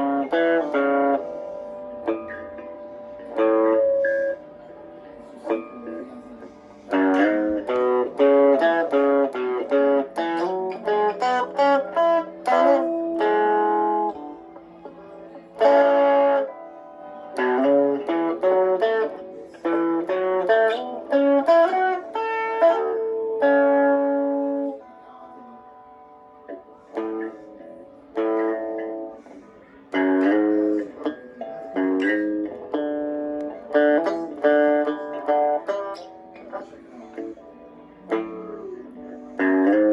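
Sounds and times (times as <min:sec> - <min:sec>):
electric guitar short chords: 0:00.0 - 0:04.6
electric guitar chords ringing: 0:00.0 - 0:39.9.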